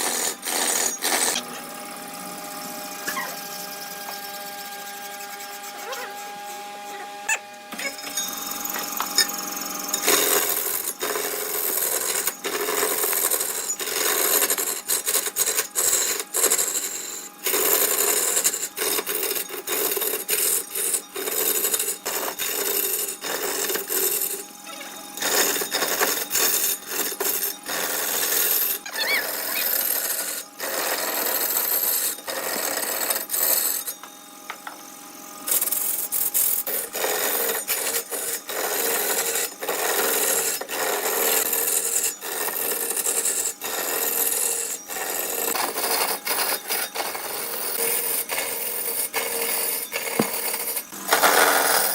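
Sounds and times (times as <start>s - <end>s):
turning tool scraping wood: 0.0s - 1.5s, 3.0s - 7.4s, 8.6s - 34.8s, 35.5s - 51.9s
lathe motor hum: 0.0s - 7.7s, 8.3s - 51.9s.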